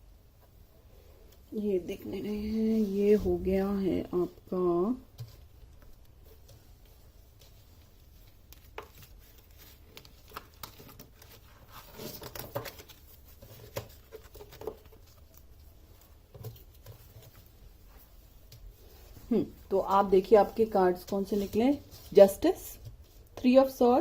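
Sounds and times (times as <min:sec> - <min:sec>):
cards tapping and rustling: 0:08.2 - 0:15.6.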